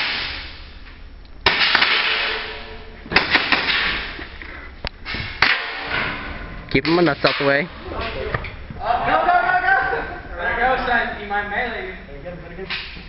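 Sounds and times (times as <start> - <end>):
sharp knocks in echoing room: 1.4 - 4.2, 5.1 - 8.5.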